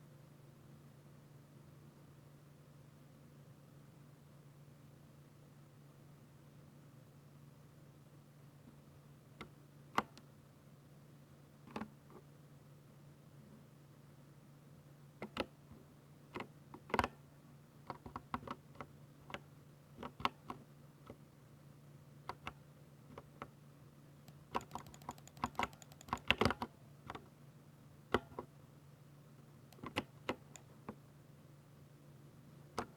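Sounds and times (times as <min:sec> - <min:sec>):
mechanical keyboard typing: 0:20.0 - 0:20.6, 0:24.3 - 0:27.2, 0:29.7 - 0:30.7.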